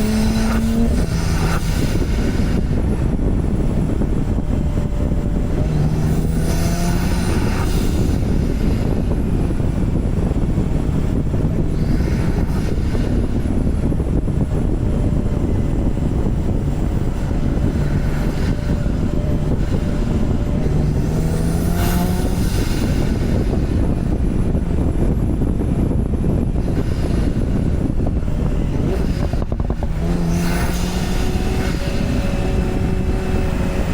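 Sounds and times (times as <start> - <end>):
car engine running: 0.0 - 33.9
road noise: 0.0 - 33.9.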